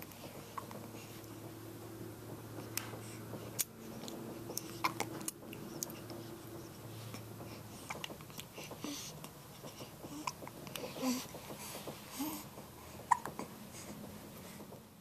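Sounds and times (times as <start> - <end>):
baby hiccuping: 13.1 - 13.3.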